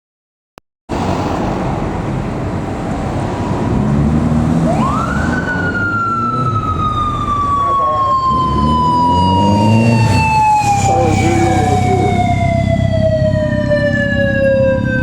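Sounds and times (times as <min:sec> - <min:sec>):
engine and road noise: 0:00.9 - 0:15.0
motorcycle siren wailing: 0:04.6 - 0:15.0.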